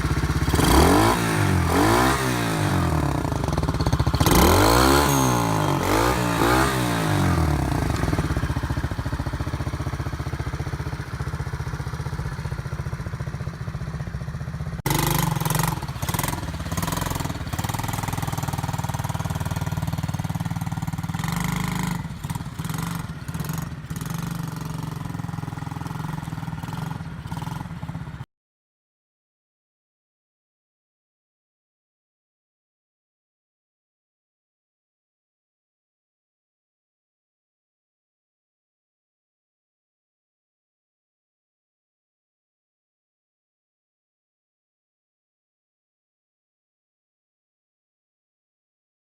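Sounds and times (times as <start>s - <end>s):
quad engine revving and idling: 0.0s - 28.2s.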